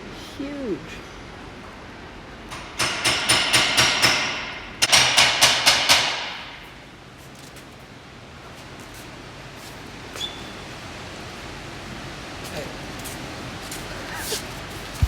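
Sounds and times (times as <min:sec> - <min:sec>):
hammer striking metal: 0:02.5 - 0:06.6.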